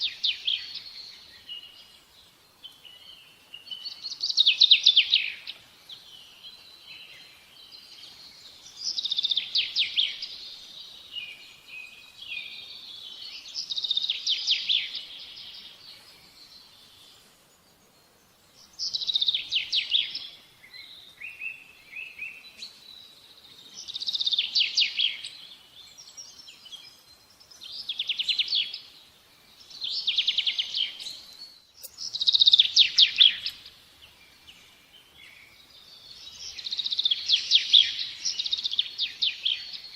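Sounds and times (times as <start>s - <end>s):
faint background noise: 0.0s - 39.9s
songbird trilling: 31.8s - 33.7s.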